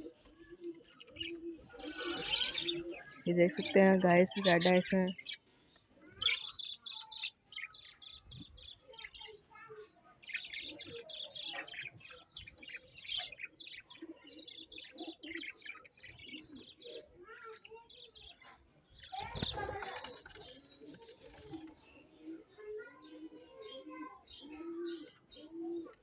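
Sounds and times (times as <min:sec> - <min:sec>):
parrots chirping: 0:06.2 - 0:08.8, 0:10.3 - 0:17.0.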